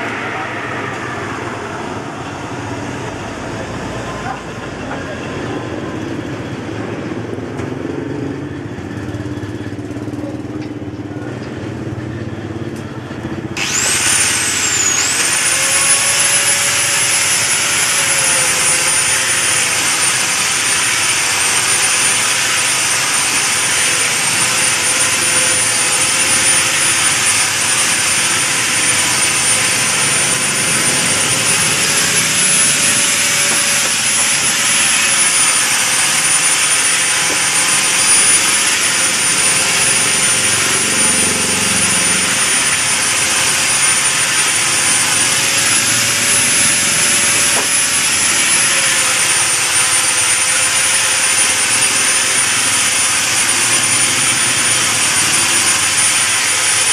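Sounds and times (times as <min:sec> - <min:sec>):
workshop noise: 0:00.0 - 0:56.9
power tool motor whining: 0:13.6 - 0:56.9.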